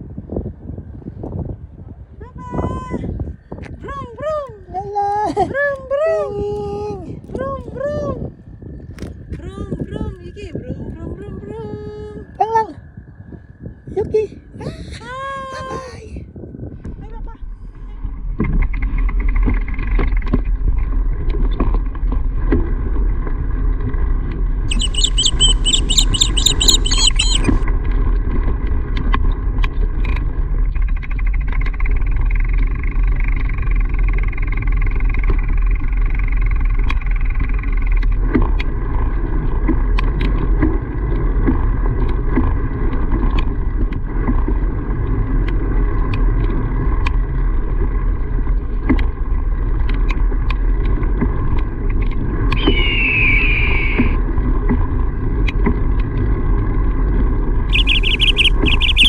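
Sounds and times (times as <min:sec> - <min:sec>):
wind rumble on microphone: 0:00.0 - 0:59.0
high warbling ringing tone: 0:24.7 - 0:27.6, 0:52.6 - 0:54.2, 0:57.7 - 0:59.0.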